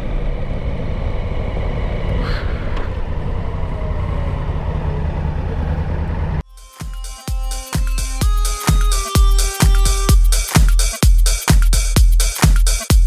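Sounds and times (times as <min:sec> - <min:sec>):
motorcycle engine running: 0:00.0 - 0:06.4
electronic music with a beat: 0:06.4 - 0:13.0.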